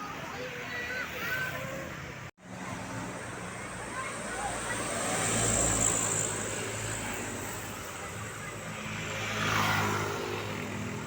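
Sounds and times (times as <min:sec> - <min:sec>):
traffic engine hum: 0:00.0 - 0:11.0
vehicle passing: 0:02.4 - 0:11.0.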